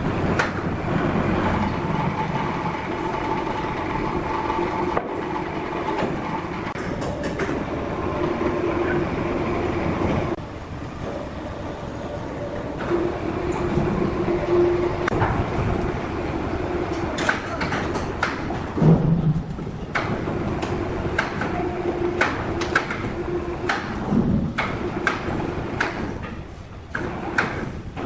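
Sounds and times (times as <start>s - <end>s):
sawmill machinery humming: 0.0s - 18.9s, 19.5s - 28.0s.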